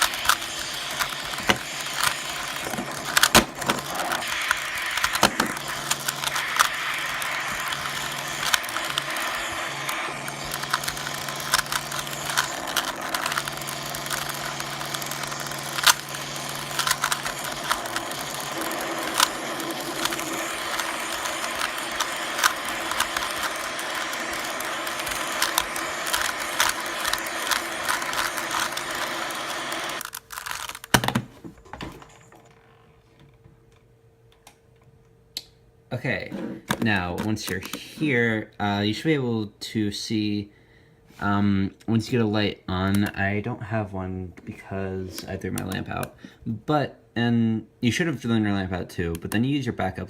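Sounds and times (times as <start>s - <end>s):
plastic cube clicking: 0.0s - 9.5s, 10.2s - 16.1s, 16.7s - 29.3s
faint hum: 0.0s - 50.0s.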